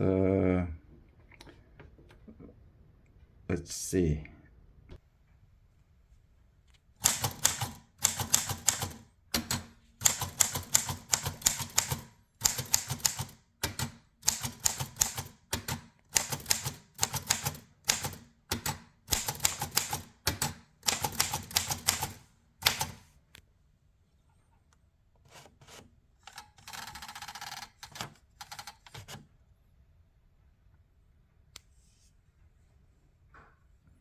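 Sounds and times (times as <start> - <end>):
typewriter key strikes: 7.0 - 23.0.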